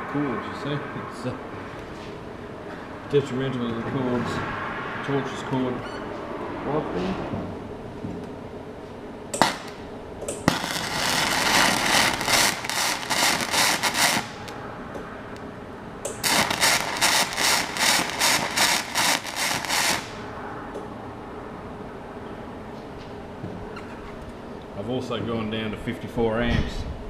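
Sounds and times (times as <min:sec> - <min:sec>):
welding arc crackling: 0:09.3 - 0:14.6, 0:16.0 - 0:20.3.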